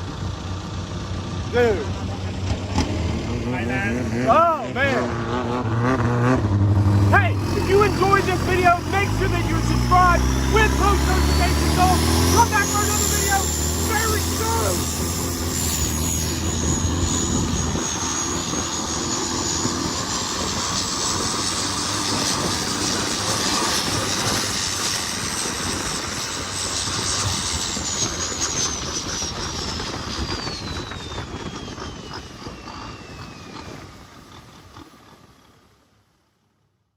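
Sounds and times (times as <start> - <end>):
boat engine at high revs: 0.0 - 35.6.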